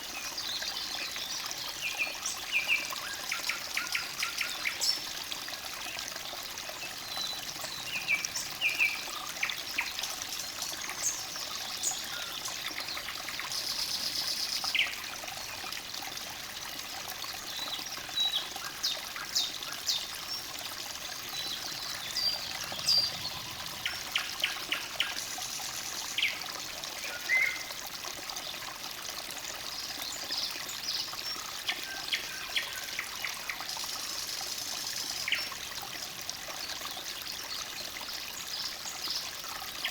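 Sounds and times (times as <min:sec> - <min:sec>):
stream babbling: 0:00.0 - 0:39.9
songbirds chirping: 0:21.2 - 0:27.7.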